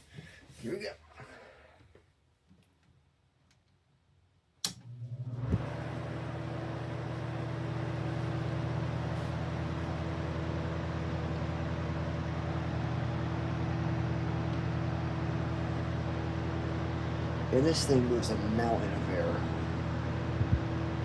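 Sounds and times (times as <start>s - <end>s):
electric fan running: 4.7s - 21.0s.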